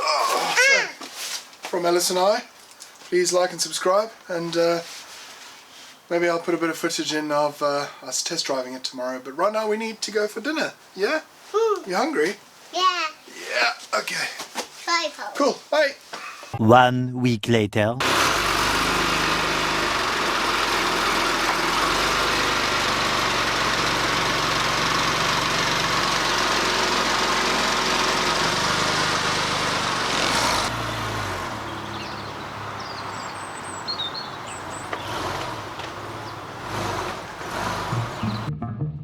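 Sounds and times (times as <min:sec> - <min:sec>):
car engine running: 0:18.0 - 0:38.5
road and wind noise: 0:18.0 - 0:38.5.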